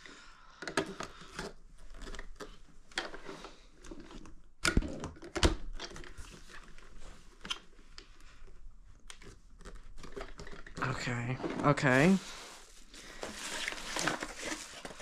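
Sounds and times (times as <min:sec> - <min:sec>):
plastic parts clicking and tapping: 0:00.6 - 0:03.2, 0:09.1 - 0:10.8.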